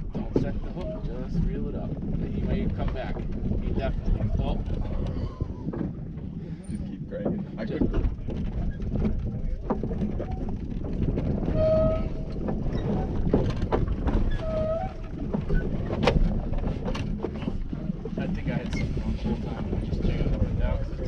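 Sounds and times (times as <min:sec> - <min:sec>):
fishing boat engine rumble: 0:00.0 - 0:21.0
wind on microphone: 0:00.0 - 0:21.0
knocks and clicks: 0:07.2 - 0:20.5.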